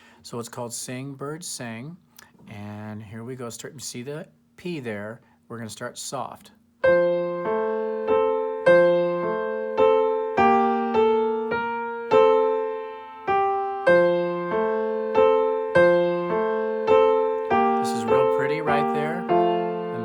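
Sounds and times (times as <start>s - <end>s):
simple piano melody: 6.8s - 20.0s.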